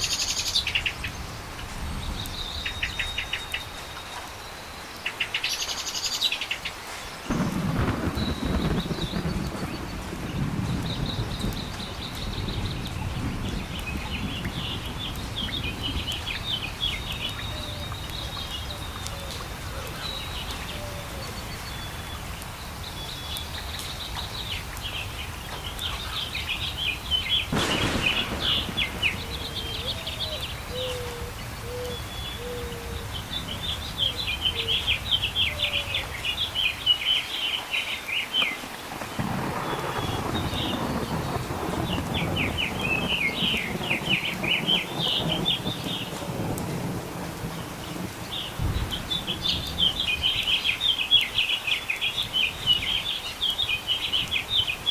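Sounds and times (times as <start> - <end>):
background hiss: 0.0 - 54.9
birds twittering: 0.0 - 54.9
sharp crack: 27.4 - 31.1.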